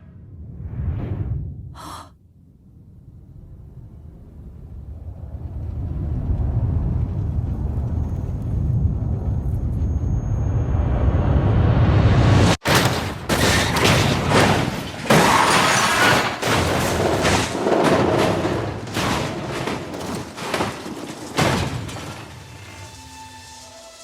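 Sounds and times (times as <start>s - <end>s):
cars crashing: 12.6s - 24.0s.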